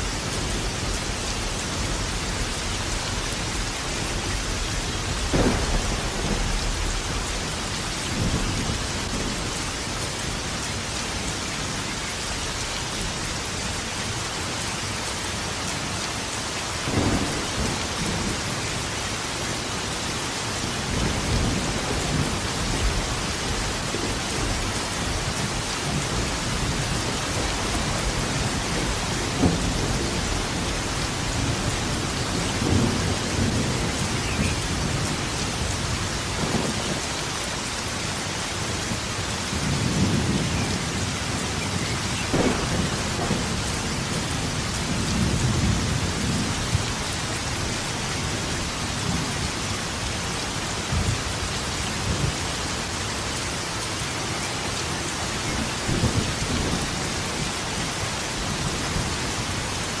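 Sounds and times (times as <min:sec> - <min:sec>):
steady rain falling: 0:00.0 - 1:00.0
thunder rumbling: 0:00.2 - 0:10.6, 0:16.8 - 0:19.1, 0:20.7 - 0:37.2, 0:38.6 - 0:52.4.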